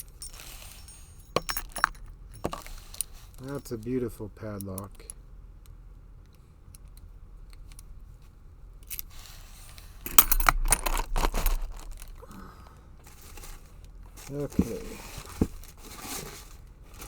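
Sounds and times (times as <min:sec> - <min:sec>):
padlocks and keys clinking: 0:00.0 - 0:03.9, 0:10.1 - 0:12.2.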